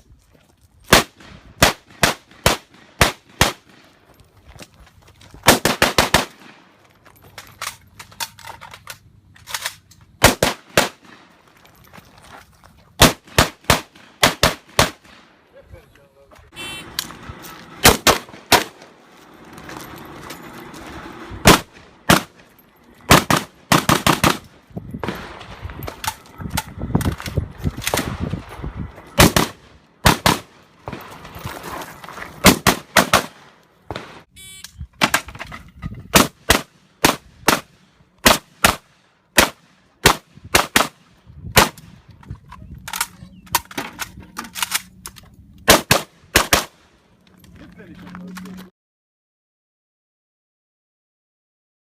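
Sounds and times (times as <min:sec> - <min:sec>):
rifle firing single shots: 0:00.9 - 0:03.8, 0:05.4 - 0:06.6, 0:10.2 - 0:11.4, 0:13.0 - 0:15.4, 0:23.1 - 0:26.2, 0:29.2 - 0:31.1, 0:32.4 - 0:34.3, 0:36.1 - 0:41.8, 0:45.7 - 0:46.8.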